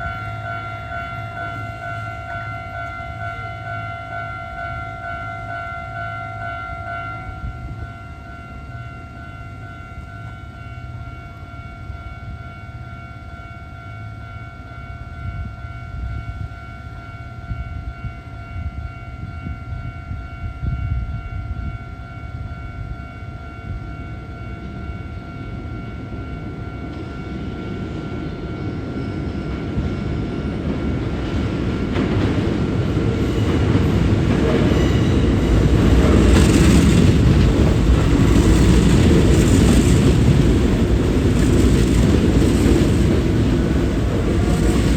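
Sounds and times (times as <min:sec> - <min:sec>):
electric train rumbling: 0:00.0 - 0:44.9
level crossing warning bell: 0:00.0 - 0:44.9
wheels clacking over rail joints: 0:29.5 - 0:44.9.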